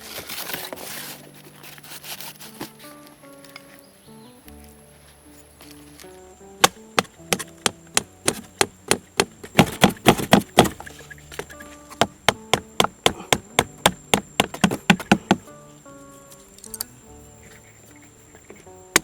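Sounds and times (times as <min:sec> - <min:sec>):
background music: 0:00.0 - 0:19.0
tool chopping wood: 0:06.6 - 0:15.5.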